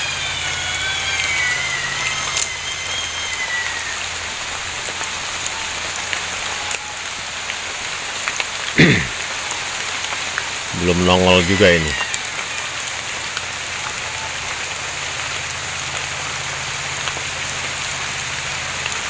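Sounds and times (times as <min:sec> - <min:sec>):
shrill wavering animal cry: 0:00.0 - 0:07.4, 0:09.2 - 0:14.7
steady rain: 0:00.0 - 0:19.0.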